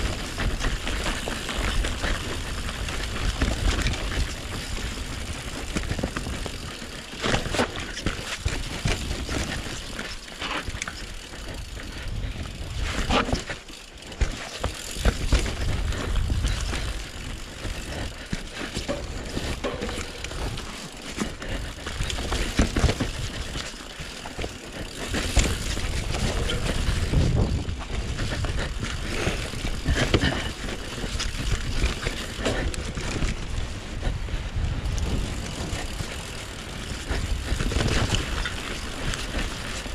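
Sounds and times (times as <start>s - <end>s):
bike tyres rolling and rattling: 0.0s - 39.9s
wind rumble on microphone: 10.9s - 13.5s, 15.0s - 23.7s, 24.4s - 39.9s.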